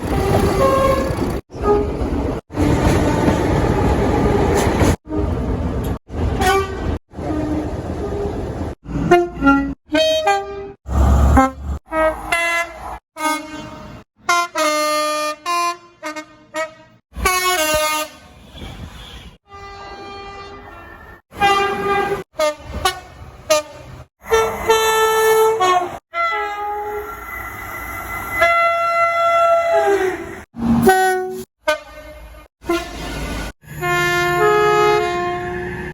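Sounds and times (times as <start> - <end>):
train air horns: 6.4 - 7.5, 9.0 - 27.4, 28.0 - 35.9.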